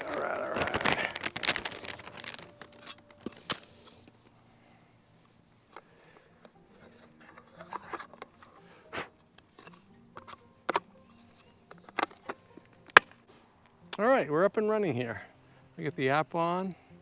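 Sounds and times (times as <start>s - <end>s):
birdseed bag rustling: 0.0s - 4.1s.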